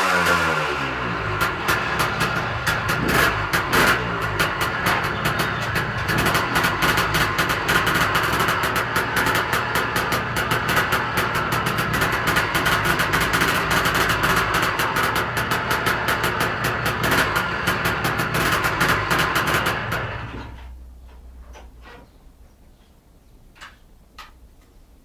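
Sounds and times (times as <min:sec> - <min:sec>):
two-stroke engine running: 0:00.0 - 0:20.7
fast ticking rattle: 0:01.0 - 0:20.6.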